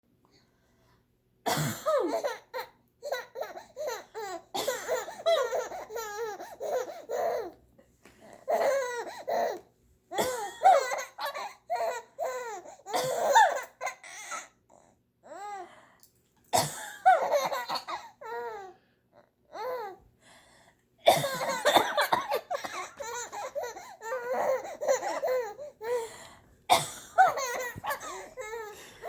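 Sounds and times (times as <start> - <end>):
adult fake coughing: 1.5 - 2.3, 10.2 - 11.0, 12.9 - 13.6, 16.5 - 18.1, 21.1 - 23.5, 26.7 - 28.3
baby laughing: 2.0 - 7.6, 21.2 - 25.7, 27.2 - 29.0.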